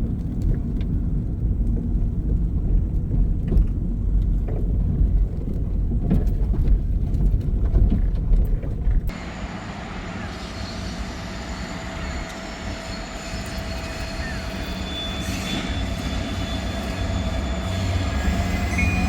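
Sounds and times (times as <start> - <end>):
small knocks and rattles: 0.0 - 9.1
car road and engine rumble: 0.0 - 10.1.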